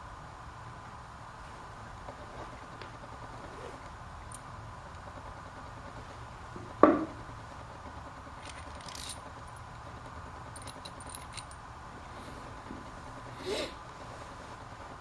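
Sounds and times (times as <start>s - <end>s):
small metal hardware jingling: 8.4s - 9.6s, 10.5s - 11.6s.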